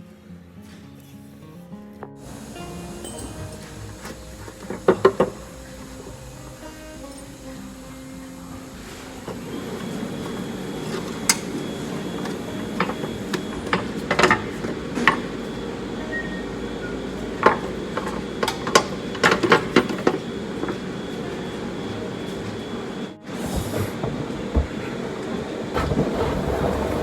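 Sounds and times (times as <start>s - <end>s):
tools clinking on metal: 2.7s - 6.1s.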